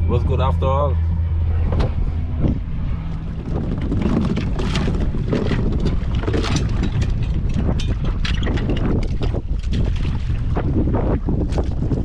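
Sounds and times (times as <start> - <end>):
steady low hum: 0.0 - 12.0
wind buffeting microphone: 0.0 - 12.0.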